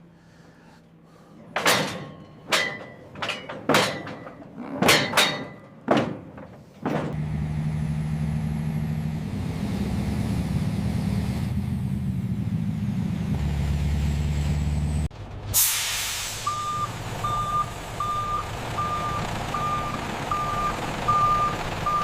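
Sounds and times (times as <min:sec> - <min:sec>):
metal knocks and clanks: 0:01.4 - 0:07.2
large vehicle engine running: 0:06.6 - 0:22.0.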